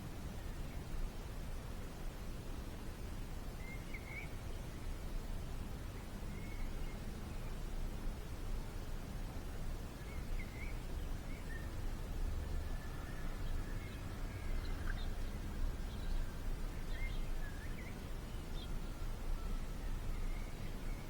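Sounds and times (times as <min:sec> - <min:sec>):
low outdoor rumble: 0:04.5 - 0:21.0
small birds chirping: 0:12.9 - 0:19.0.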